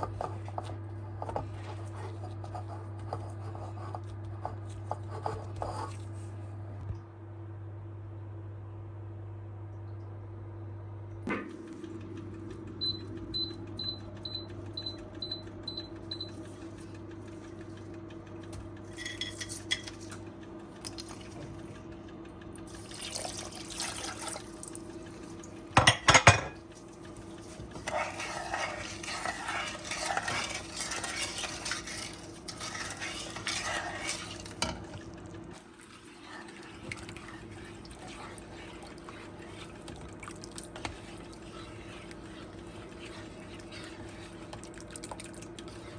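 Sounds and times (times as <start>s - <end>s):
steady low hum: 0.0s - 45.9s
utensils clinking and scraping: 18.9s - 20.2s, 25.8s - 35.0s
utensil clatter: 25.8s - 35.0s.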